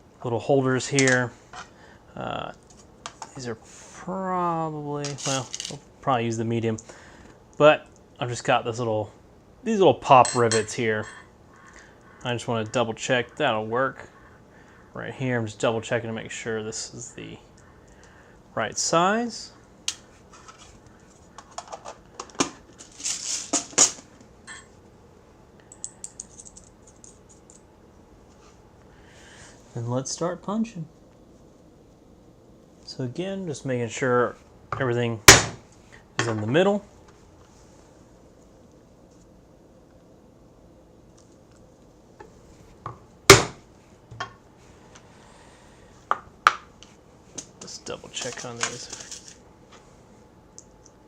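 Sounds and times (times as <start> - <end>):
metal rivets clicking and clinking: 25.7 - 27.7
mallet striking hole punch: 35.3 - 35.6, 43.3 - 43.6.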